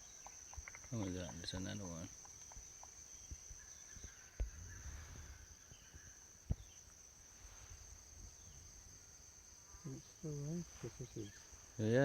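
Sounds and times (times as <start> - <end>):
woodpecker knocking on tree: 0.0 - 4.6
high-pitched insect drone: 0.0 - 12.0.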